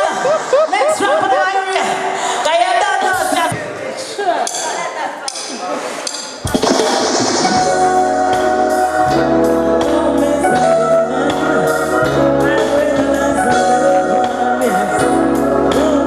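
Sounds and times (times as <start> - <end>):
drum beat: 6.5 - 8.8
melody line: 6.5 - 10.4
reggae bass line: 6.5 - 16.0.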